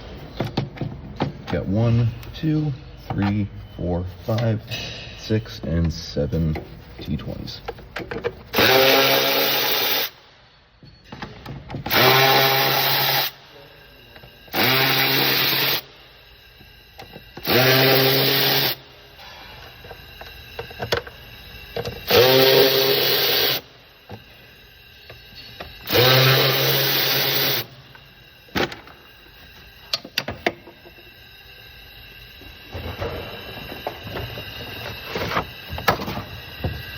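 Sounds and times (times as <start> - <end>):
cordless driver motor spinning up: 11.9 - 13.3, 14.5 - 15.8, 17.4 - 18.8, 22.0 - 23.6, 25.8 - 27.7.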